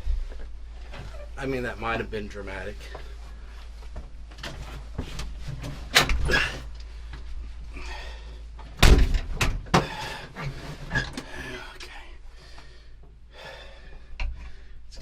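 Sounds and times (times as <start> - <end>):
door shutting with a thud: 8.8 - 10.0.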